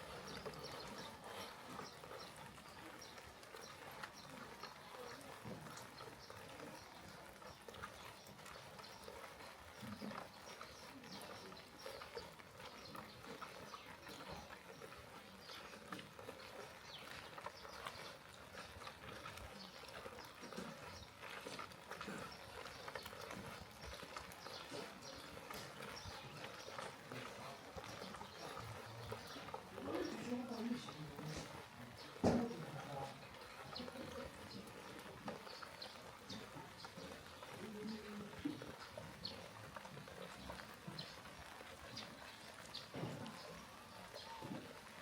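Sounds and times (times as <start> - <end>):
rain drips and taps: 28.2 - 33.2, 40.7 - 45.0.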